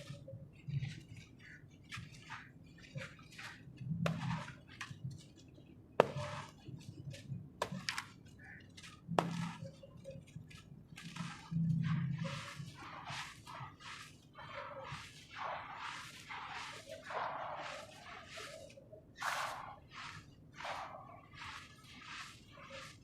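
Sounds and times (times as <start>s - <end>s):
sand-cement chunks crunching: 10.9s - 23.0s.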